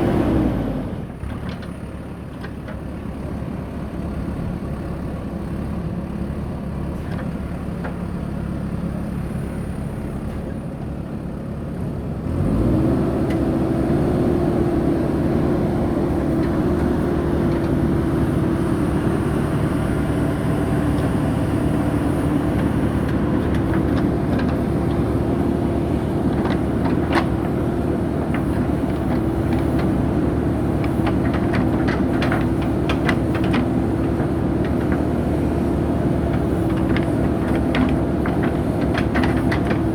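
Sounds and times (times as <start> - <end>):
diesel engine revving: 0.0 - 1.1, 12.2 - 39.9.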